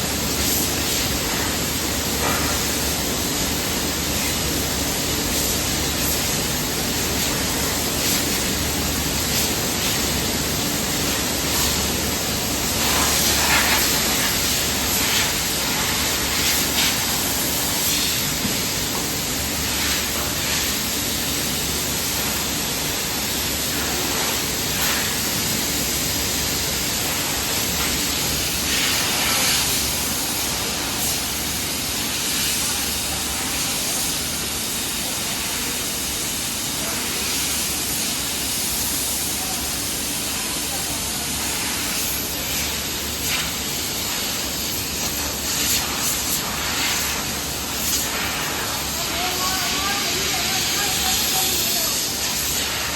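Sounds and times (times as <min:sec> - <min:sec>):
machinery hiss: 0:00.0 - 0:52.9.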